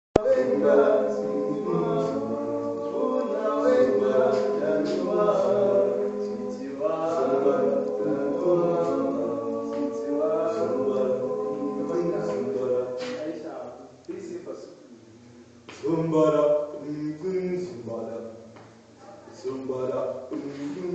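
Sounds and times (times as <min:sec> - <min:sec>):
choir singing a cappella: 0:00.2 - 0:13.8.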